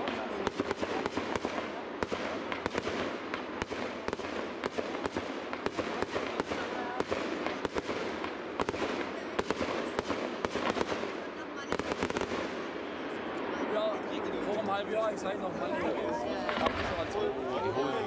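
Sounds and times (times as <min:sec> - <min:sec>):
fireworks cracks and bangs: 0:00.0 - 0:13.9, 0:16.4 - 0:17.2.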